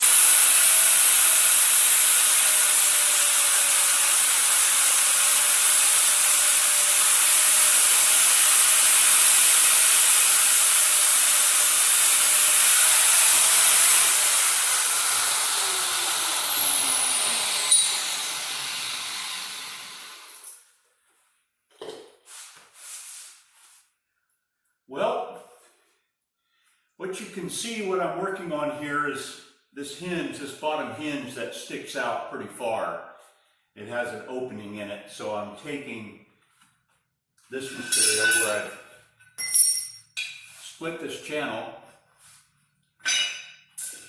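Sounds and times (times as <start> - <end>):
power tool running and spinning down: 0.0 - 20.6.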